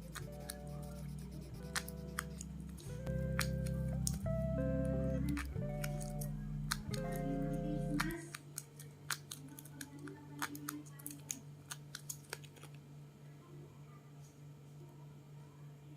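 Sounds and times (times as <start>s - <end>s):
plucked guitar music: 0.0s - 8.2s
small objects clicking and tapping: 7.9s - 12.8s.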